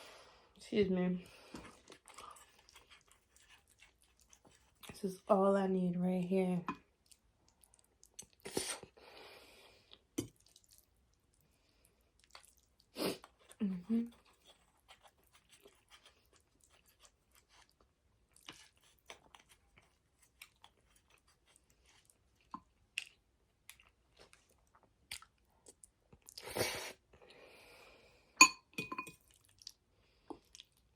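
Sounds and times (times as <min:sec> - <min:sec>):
wet chewing sounds: 0:01.3 - 0:05.0, 0:06.8 - 0:09.0, 0:09.9 - 0:26.6, 0:29.1 - 0:30.9.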